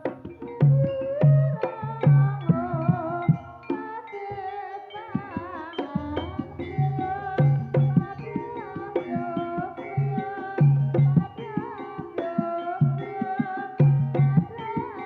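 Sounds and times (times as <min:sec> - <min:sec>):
gamelan tones: 0:00.0 - 0:15.0
wavering melody: 0:00.0 - 0:15.0.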